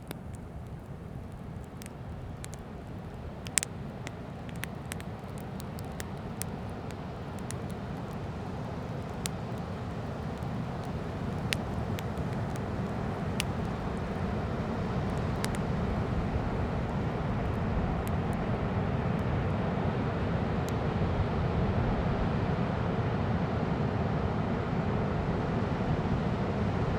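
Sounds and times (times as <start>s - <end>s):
fire crackling and popping: 0.0s - 20.8s.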